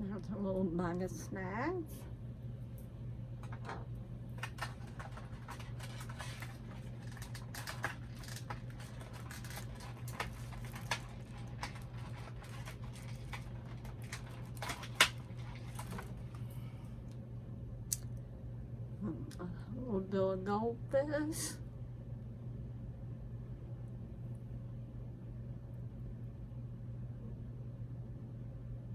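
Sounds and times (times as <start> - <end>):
steady low hum: 0.0 - 28.9
plastic clicks and crinkles: 3.4 - 16.4.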